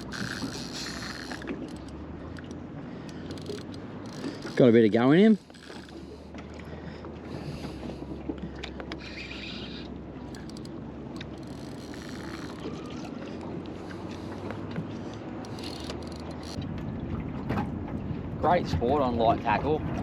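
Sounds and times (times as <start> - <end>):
fishing reel clicking: 0.0 - 6.1, 9.0 - 13.1, 15.4 - 16.6.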